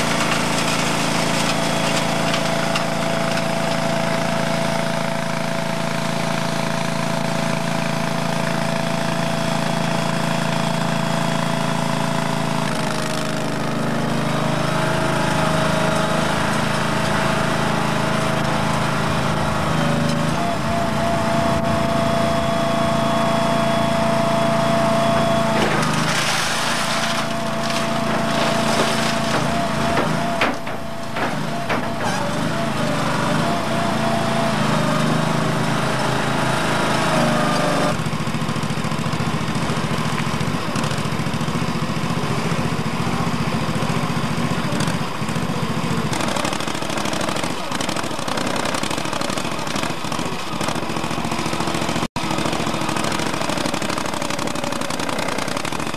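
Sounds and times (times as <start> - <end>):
small engine running: 0.0 - 55.9
metal clanks and knocks: 25.2 - 32.6.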